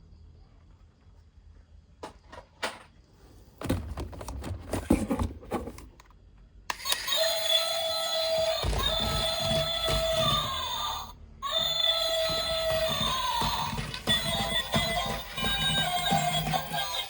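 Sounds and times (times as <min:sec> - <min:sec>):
clicks: 0:06.7 - 0:10.6
loud electronic toy tone: 0:06.7 - 0:17.0
plastic toy clattering: 0:08.4 - 0:10.6, 0:11.5 - 0:17.0.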